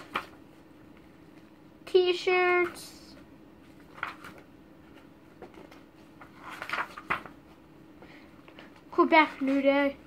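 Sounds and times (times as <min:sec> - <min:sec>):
magazine pages rustling: 0:00.0 - 0:00.7, 0:03.6 - 0:07.6, 0:08.5 - 0:10.0
faint steady hum: 0:00.0 - 0:10.0.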